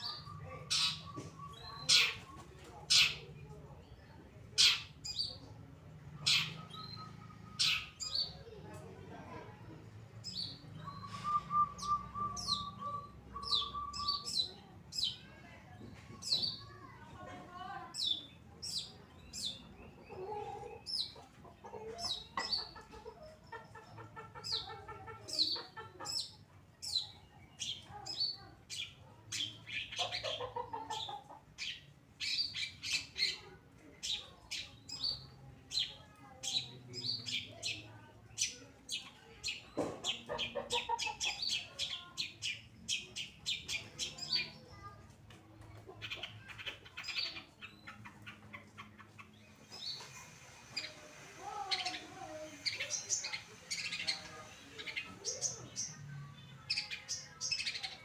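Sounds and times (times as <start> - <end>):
shrike singing: 10.8 - 14.5.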